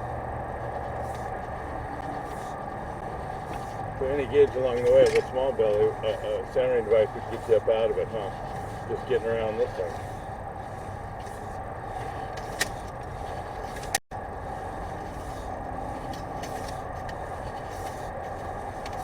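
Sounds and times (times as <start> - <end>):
mechanical drone with hum: 0.0 - 19.0.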